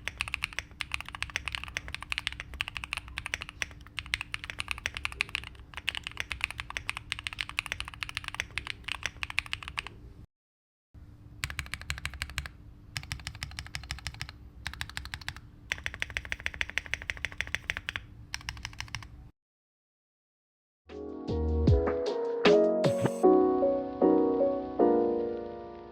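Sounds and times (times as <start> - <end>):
fast typing on mechanical keyboard: 0.0 - 10.0, 11.4 - 19.2.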